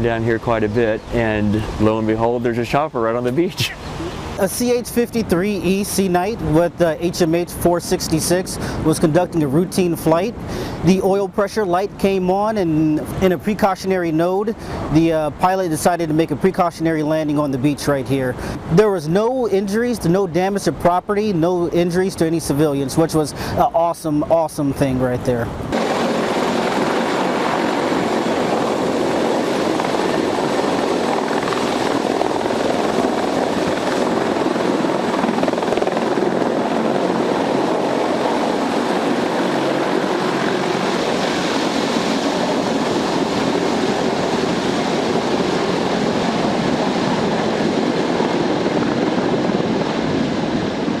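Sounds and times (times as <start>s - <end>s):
helicopter engines and rotors: 0.0s - 51.0s.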